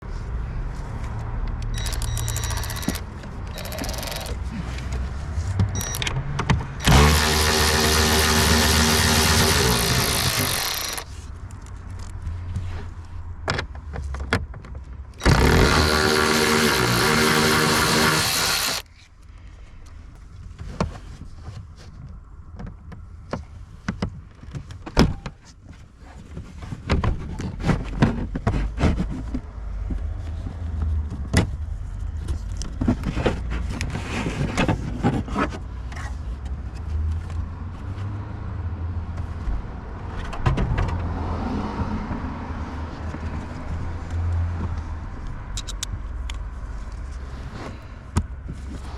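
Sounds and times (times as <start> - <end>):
cordless drill motor whine: 1.8 - 4.4, 5.8 - 6.1, 6.8 - 11.1, 15.2 - 18.8.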